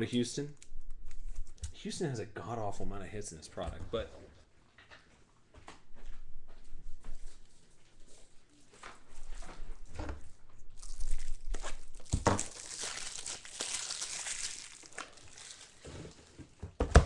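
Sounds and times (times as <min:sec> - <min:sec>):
card wrappers crinkling and tearing: 0:10.7 - 0:16.3.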